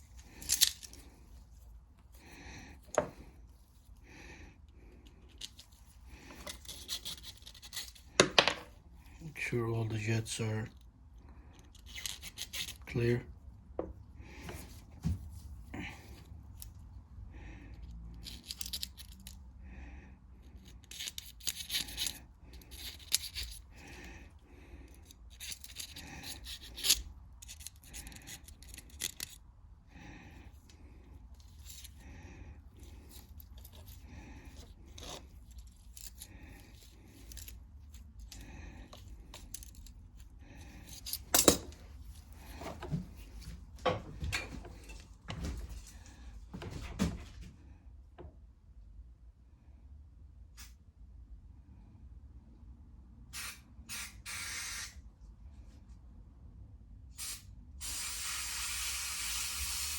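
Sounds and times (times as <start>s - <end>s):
metal clinks: 40.9s - 41.9s.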